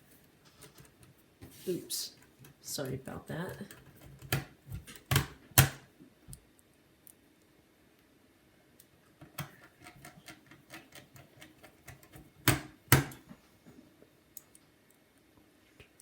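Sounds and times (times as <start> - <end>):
screwdriver clicking on laptop parts: 3.6 - 5.8, 9.2 - 13.2.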